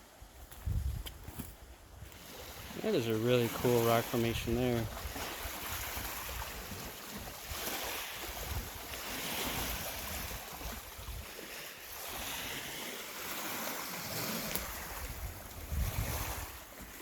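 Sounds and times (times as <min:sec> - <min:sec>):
wind gusting on microphone: 0:00.5 - 0:11.3, 0:14.1 - 0:17.0
waves washing against rocky shore: 0:02.1 - 0:17.0.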